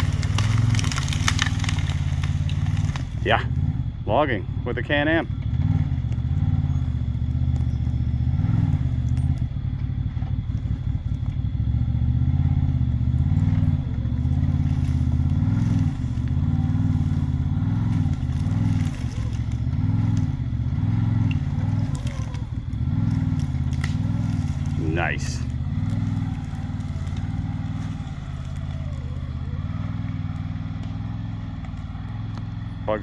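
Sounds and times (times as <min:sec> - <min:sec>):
log dragging: 0:00.0 - 0:03.6, 0:12.4 - 0:33.0
engine working under load: 0:00.0 - 0:33.0.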